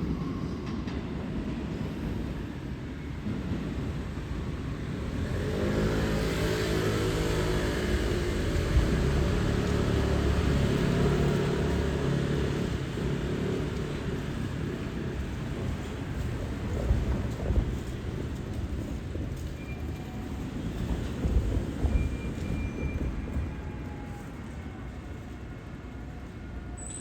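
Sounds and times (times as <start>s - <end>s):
vehicle passing by: 5.2s - 14.4s.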